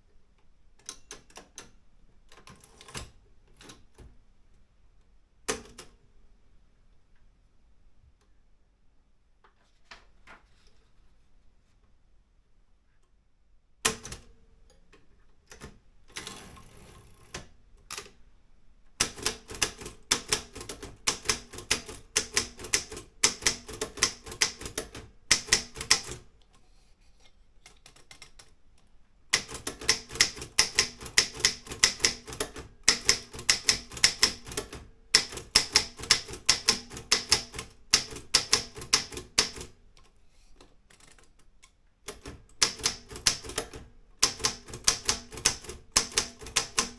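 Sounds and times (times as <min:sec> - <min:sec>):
paper rustle: 0:09.6 - 0:11.3
typewriter key strikes: 0:19.0 - 0:26.2, 0:29.3 - 0:39.7, 0:42.1 - 0:46.9.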